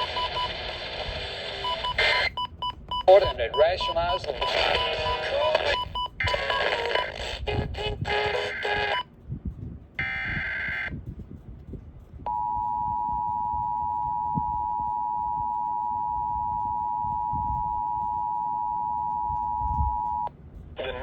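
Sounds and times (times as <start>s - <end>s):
buzzy data noise burst: 0.0s - 2.4s.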